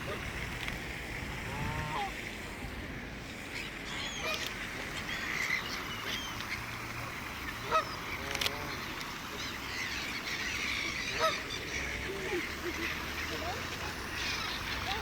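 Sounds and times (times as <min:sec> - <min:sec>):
waterfowl honking: 0:01.4 - 0:02.2, 0:05.1 - 0:15.0
chatter of high bird calls: 0:03.5 - 0:06.8, 0:07.4 - 0:15.0.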